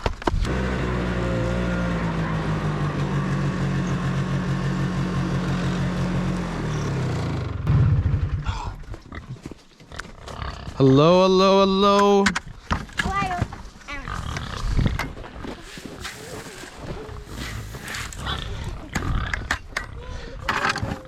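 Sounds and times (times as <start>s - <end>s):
small engine running: 0.4s - 8.5s.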